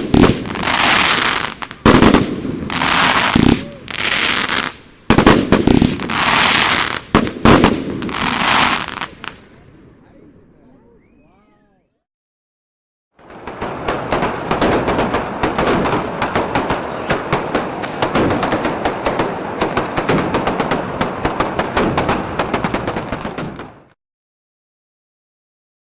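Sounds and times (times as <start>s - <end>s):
firework cake crackling: 0.0s - 11.9s, 13.2s - 23.8s.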